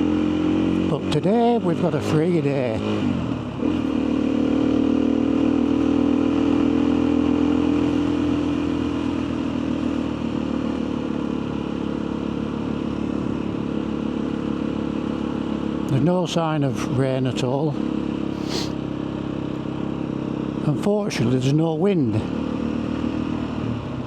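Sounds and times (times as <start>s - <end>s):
motorcycle engine cruising: 0.0s - 15.8s.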